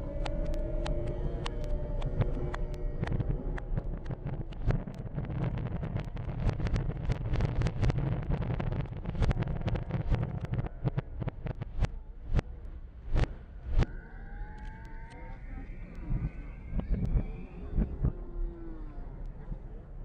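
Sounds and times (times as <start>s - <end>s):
low rumble: 0.0s - 20.0s
fireworks bangs and crackles: 3.8s - 11.9s.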